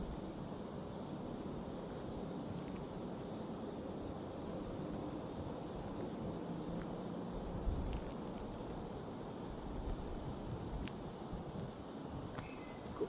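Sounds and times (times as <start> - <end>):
outdoor background hiss: 0.0 - 13.0
faint ticks and taps: 7.8 - 8.8, 10.8 - 11.0.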